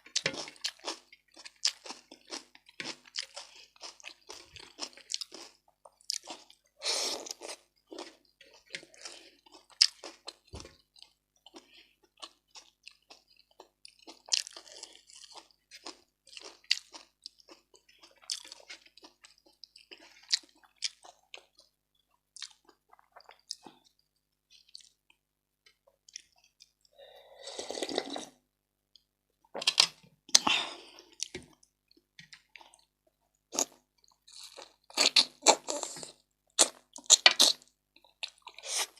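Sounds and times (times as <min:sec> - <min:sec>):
chewing with wet crunches: 0:00.1 - 0:25.2
slurping soup: 0:26.9 - 0:28.4.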